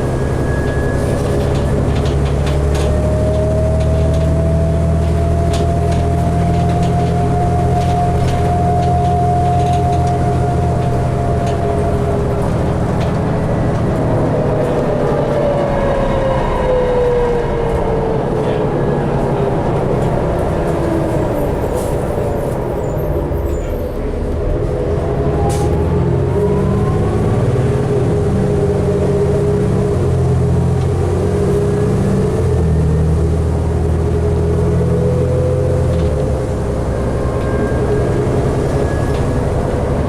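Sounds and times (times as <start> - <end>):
bus drivetrain whine: 0.0 - 40.0
bus engine drone: 0.0 - 40.0.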